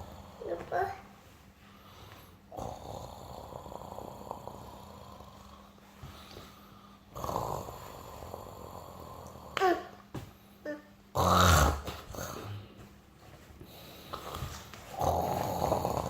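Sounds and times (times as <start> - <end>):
man snoring: 2.5 - 5.6, 7.1 - 9.6, 11.2 - 12.6, 14.9 - 16.0.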